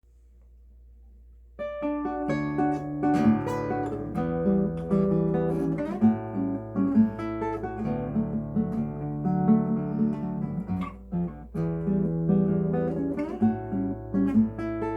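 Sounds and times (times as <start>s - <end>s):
faint low hum: 0.0s - 4.6s
classical guitar solo: 1.6s - 14.9s.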